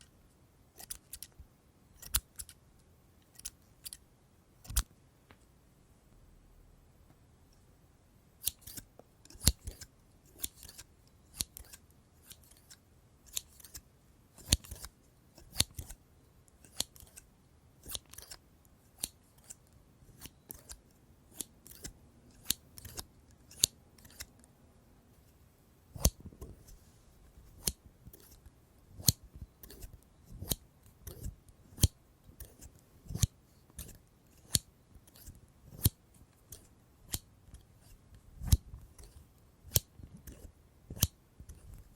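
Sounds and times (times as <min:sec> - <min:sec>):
scissors snipping: 0:00.8 - 0:01.3, 0:02.0 - 0:02.6, 0:04.6 - 0:04.9, 0:08.4 - 0:13.8, 0:14.4 - 0:16.0, 0:16.6 - 0:18.4, 0:19.0 - 0:24.5, 0:26.0 - 0:26.8, 0:27.4 - 0:41.9.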